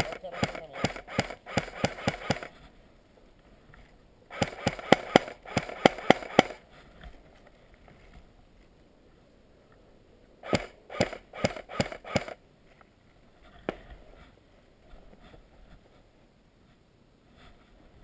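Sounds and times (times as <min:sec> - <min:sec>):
airsoft guns firing: 0:00.0 - 0:02.5, 0:04.3 - 0:06.6, 0:10.4 - 0:12.4.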